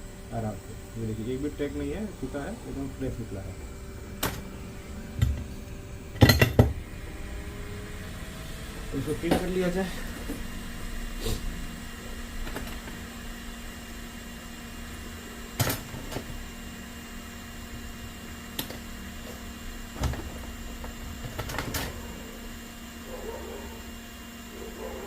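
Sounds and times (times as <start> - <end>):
electrical hum: 0.0 - 25.0.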